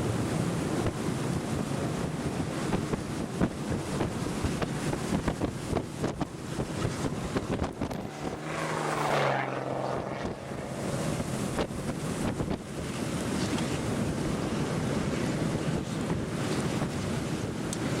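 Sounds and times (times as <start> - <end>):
wind buffeting microphone: 0.0 - 18.0
low droning hum: 4.5 - 13.1.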